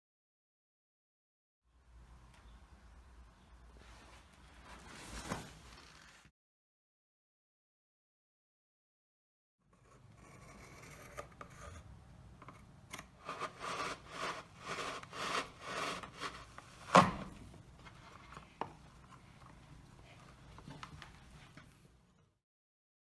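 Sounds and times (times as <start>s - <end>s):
rough rubbing or sawing strokes: 13.2s - 16.6s.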